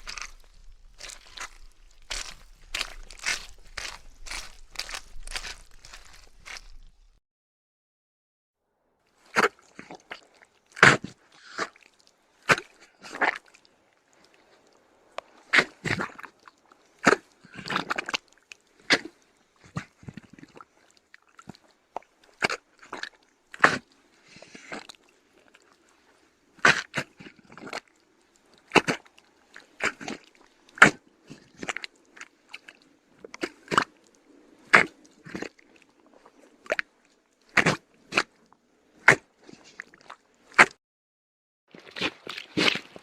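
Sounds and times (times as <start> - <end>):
footsteps in deep mud: 0.0 - 7.2, 9.3 - 20.7, 28.5 - 33.9, 34.6 - 40.8, 41.7 - 43.0.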